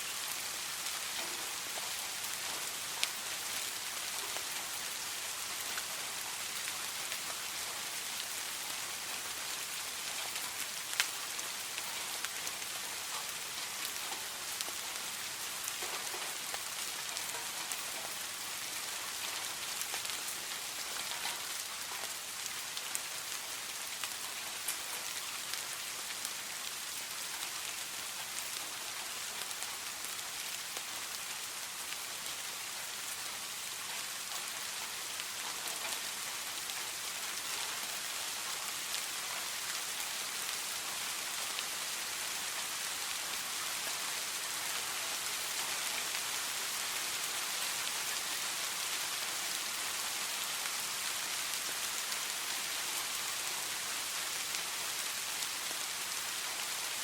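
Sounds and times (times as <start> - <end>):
steady rainfall hiss: 0.0 - 57.0
rain drop ticks: 0.2 - 23.3, 33.6 - 41.7.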